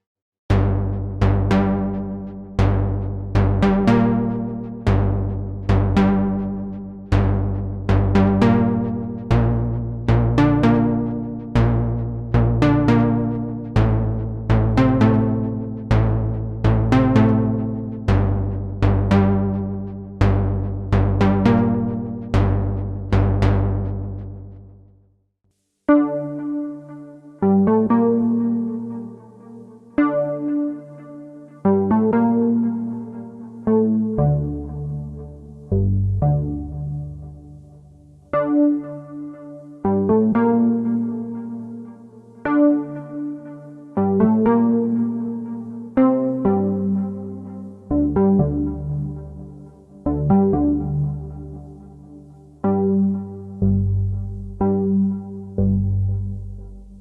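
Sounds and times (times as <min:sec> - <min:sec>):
plucky synth bass sequence: 0:00.5 - 0:24.8, 0:31.7 - 0:57.0.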